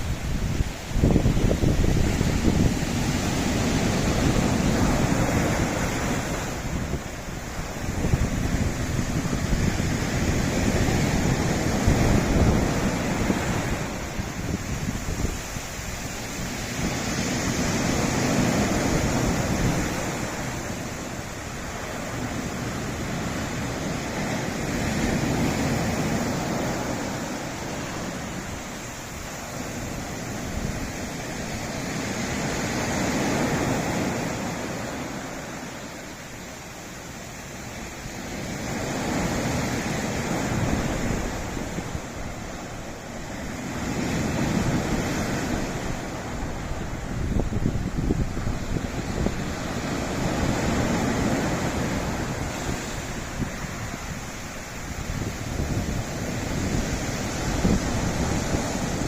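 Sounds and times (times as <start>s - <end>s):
waves washing against rocks: 0.0s - 59.0s
wind buffeting microphone: 0.0s - 59.0s.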